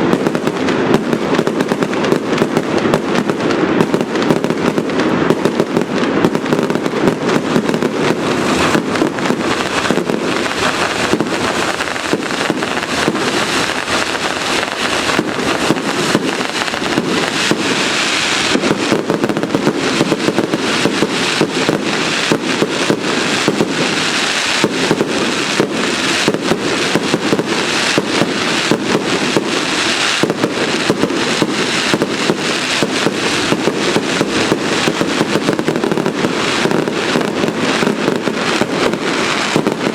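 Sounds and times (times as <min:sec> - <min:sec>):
fireworks bangs and crackling: 0:00.0 - 0:39.9.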